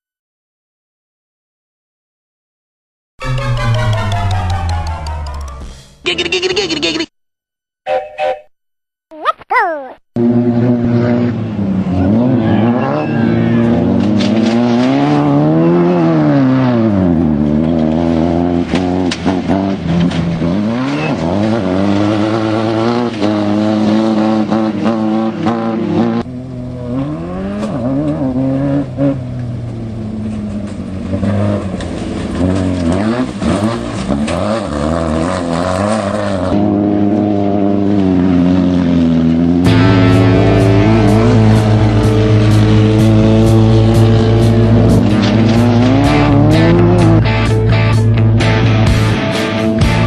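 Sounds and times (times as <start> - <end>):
race car engine revving: 10.2 - 50.0.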